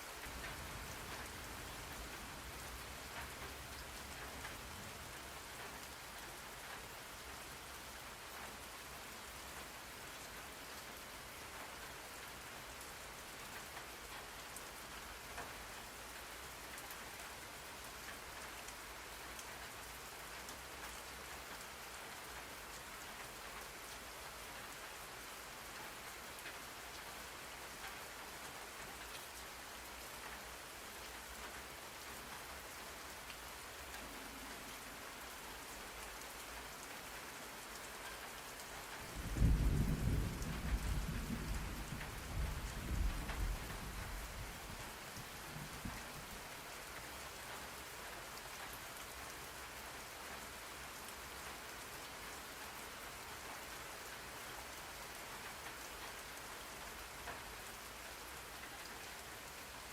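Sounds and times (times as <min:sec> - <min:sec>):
steady rain: 0:00.0 - 0:59.9
low thunder rumble: 0:39.1 - 0:44.8.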